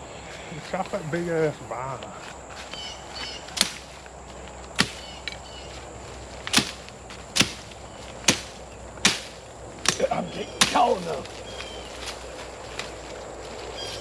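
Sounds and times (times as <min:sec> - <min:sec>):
blade chopping into vine: 0:03.5 - 0:03.9, 0:04.8 - 0:05.1, 0:06.4 - 0:11.3.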